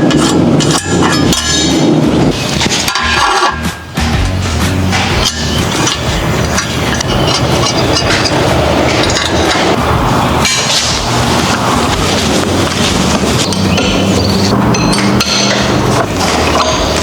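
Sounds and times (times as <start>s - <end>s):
hammer striking steel on anvil: 0.0s - 2.1s, 4.9s - 9.8s, 10.4s - 11.2s, 13.4s - 17.0s.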